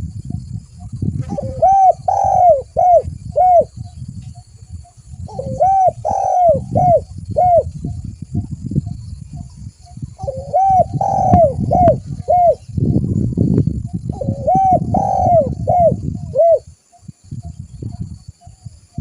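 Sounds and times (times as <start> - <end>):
dove cooing: 0.0 - 3.9, 4.8 - 8.5, 9.3 - 12.7, 13.9 - 16.7.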